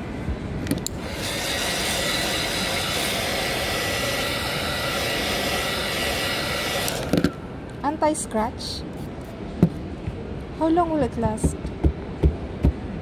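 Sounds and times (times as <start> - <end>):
mechanical whir with hiss: 0.8 - 7.5.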